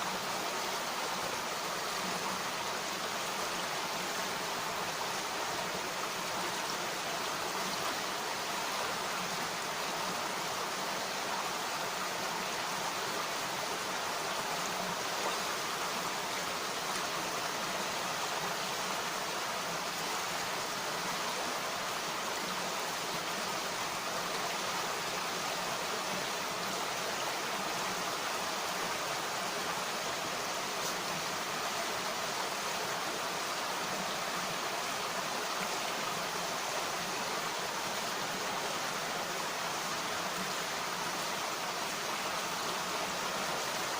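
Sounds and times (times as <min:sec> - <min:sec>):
stream flowing: 0:00.0 - 0:43.9.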